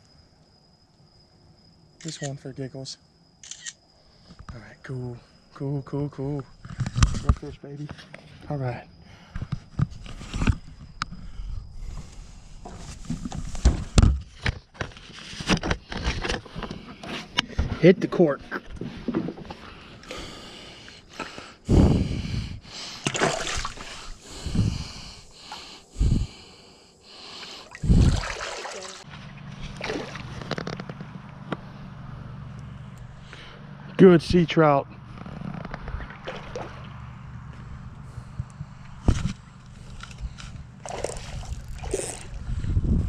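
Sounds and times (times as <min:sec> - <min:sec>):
steady low hum: 0:16.2 - 0:43.0
fish thrashing water splashing: 0:23.0 - 0:24.1, 0:27.6 - 0:29.1, 0:29.7 - 0:30.4, 0:36.2 - 0:36.9, 0:40.8 - 0:42.4.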